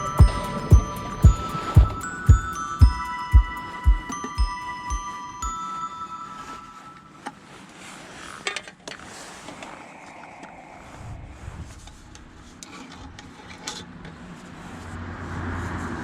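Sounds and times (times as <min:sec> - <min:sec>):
rubbing and handling noises: 0:00.0 - 0:14.9.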